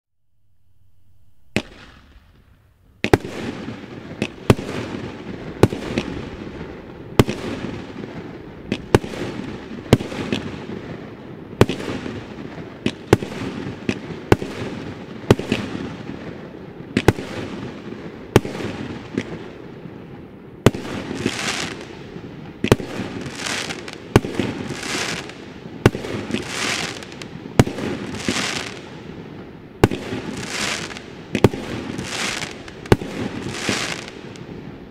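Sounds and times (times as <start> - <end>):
crackling rumble of bursting shells: 20.7 - 34.9
firework shots banging: 29.8 - 34.4.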